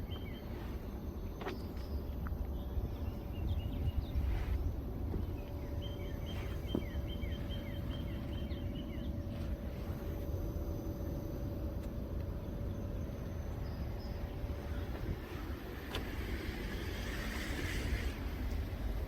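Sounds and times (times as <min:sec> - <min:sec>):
low hum: 0:00.0 - 0:19.0
small bird chirping: 0:01.5 - 0:09.8.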